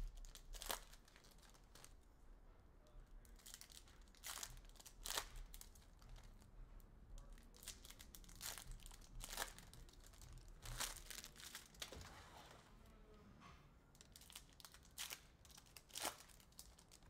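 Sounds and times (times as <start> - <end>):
foil wrappers tearing and crinkling: 0.1 - 1.9, 3.4 - 6.0, 7.5 - 12.0, 14.0 - 17.0.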